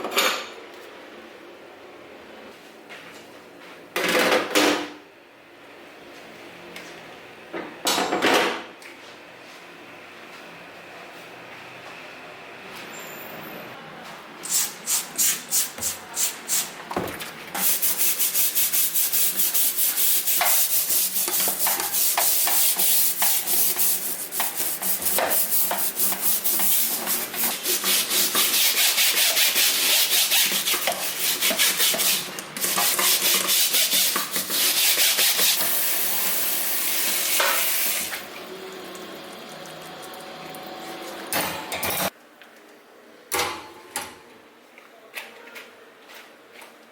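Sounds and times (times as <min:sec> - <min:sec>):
scrubbing on hard surface: 0:17.6 - 0:35.8.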